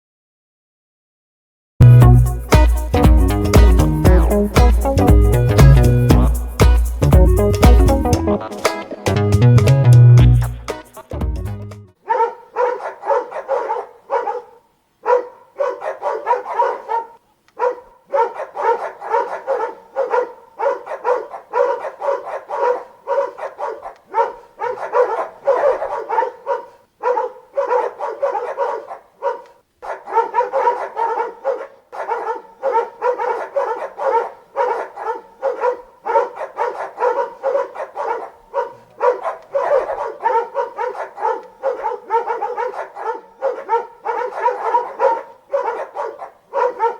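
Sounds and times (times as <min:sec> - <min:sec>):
dogs barking rapidly: 0:12.0 - 0:46.9.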